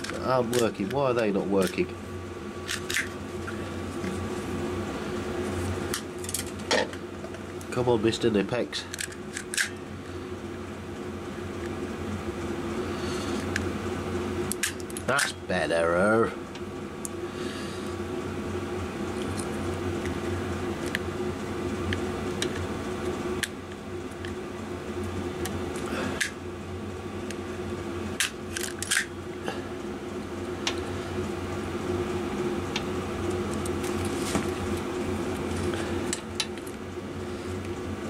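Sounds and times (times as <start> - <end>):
wire cutters snipping wire: 0.0 - 1.8
steady low hum: 0.0 - 38.0.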